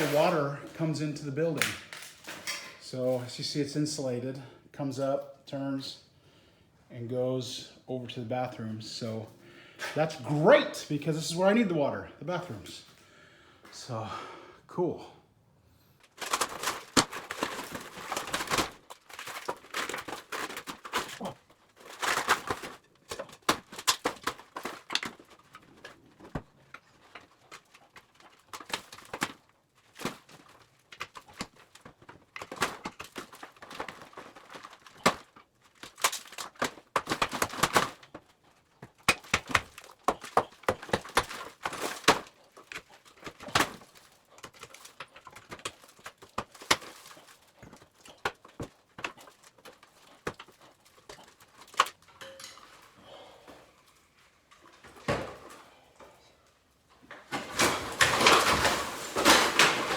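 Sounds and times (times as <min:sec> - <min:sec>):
demolition knocks and clatter: 0:00.0 - 0:02.8, 0:16.1 - 0:52.8, 0:57.1 - 0:59.9.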